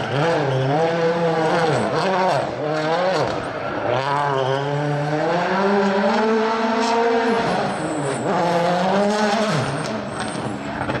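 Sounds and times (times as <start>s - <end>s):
rally car engine at high revs: 0.0s - 11.0s
tyre squeals: 3.9s - 8.7s.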